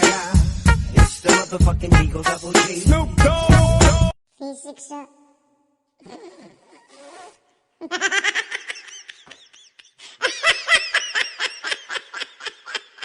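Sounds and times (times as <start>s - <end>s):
high-pitched laughter: 7.8s - 13.0s.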